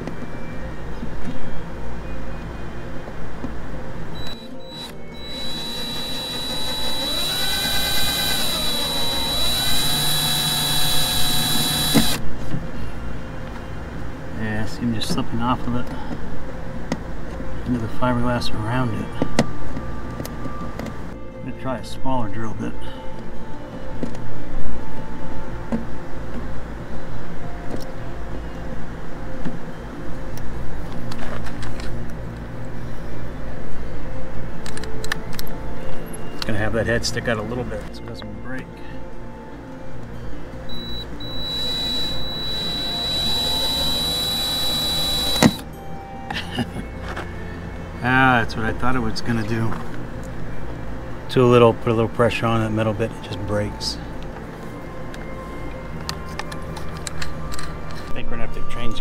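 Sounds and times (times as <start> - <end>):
low mechanical hum: 0.0 - 36.6, 37.2 - 48.0
power drill whining: 4.2 - 12.2, 40.7 - 45.6.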